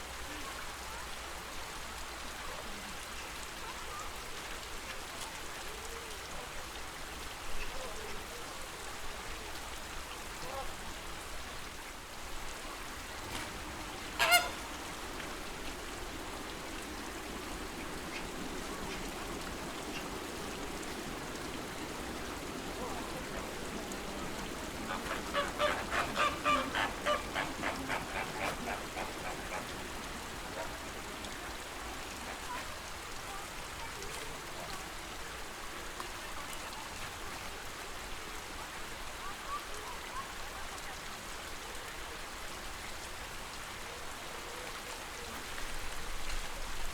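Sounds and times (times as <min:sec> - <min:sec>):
lake water: 0:00.0 - 0:46.9
flamingos honking: 0:13.2 - 0:33.0.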